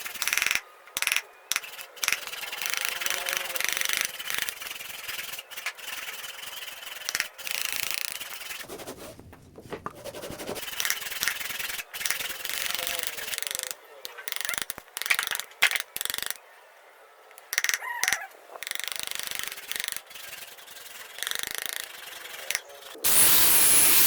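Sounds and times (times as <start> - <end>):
hand tool scraping wood: 1.5 - 13.7, 18.8 - 23.0.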